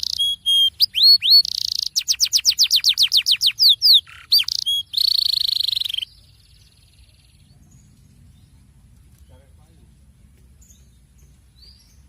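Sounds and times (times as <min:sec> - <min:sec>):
canary singing: 0:00.0 - 0:07.4.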